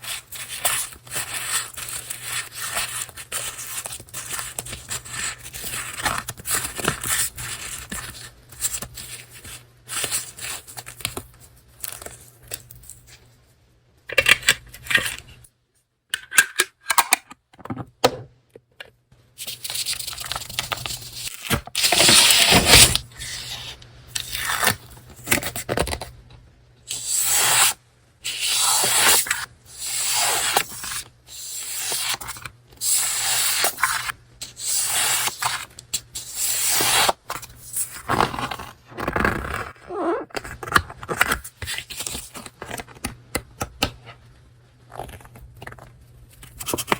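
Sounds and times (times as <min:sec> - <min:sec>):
paper rustling and tearing: 0:00.0 - 0:11.2, 0:19.4 - 0:26.0.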